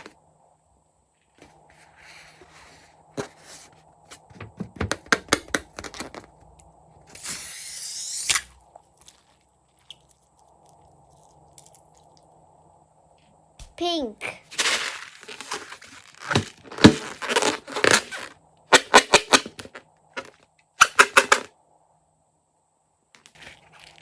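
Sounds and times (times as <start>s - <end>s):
crunchy slime crackling: 8.6s - 12.3s.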